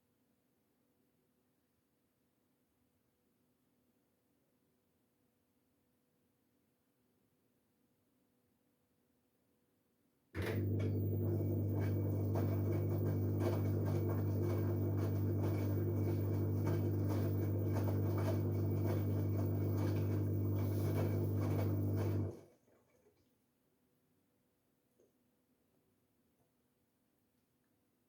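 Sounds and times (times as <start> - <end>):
washing machine humming: 10.4 - 22.6.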